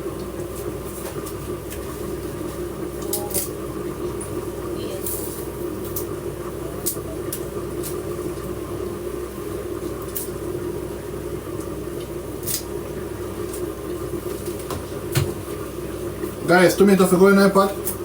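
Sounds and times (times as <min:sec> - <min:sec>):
droning hum: 0:00.0 - 0:18.0.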